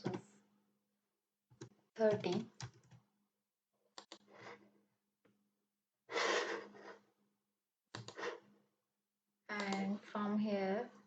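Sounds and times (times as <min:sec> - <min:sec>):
computer mouse clicks: 0:04.0 - 0:04.3, 0:07.9 - 0:08.3, 0:09.5 - 0:09.9.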